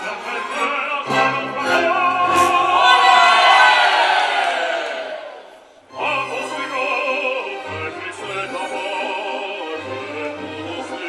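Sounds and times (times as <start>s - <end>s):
operatic baritone singing: 0.0s - 3.6s, 5.9s - 11.0s.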